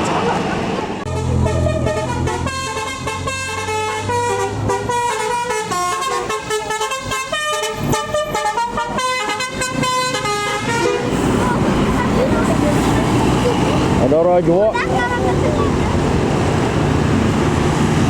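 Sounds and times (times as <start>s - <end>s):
bus engine rumbling: 0.0s - 18.0s
multi-tone air horn melody: 1.1s - 11.2s.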